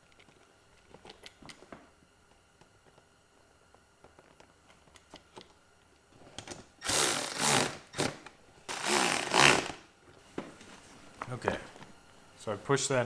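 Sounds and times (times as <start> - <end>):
loud rough bursts: 6.8 - 7.9, 8.7 - 9.8.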